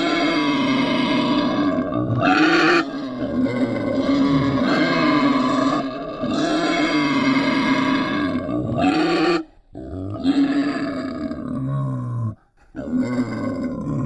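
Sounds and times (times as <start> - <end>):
wild boar grunting: 0.0 - 14.0.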